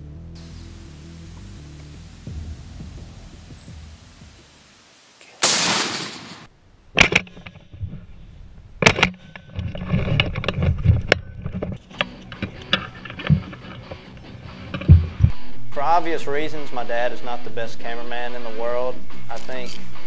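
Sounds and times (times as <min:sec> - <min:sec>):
shotgun shot: 0:05.4 - 0:07.1
sharp knocks and thumps: 0:14.7 - 0:15.3.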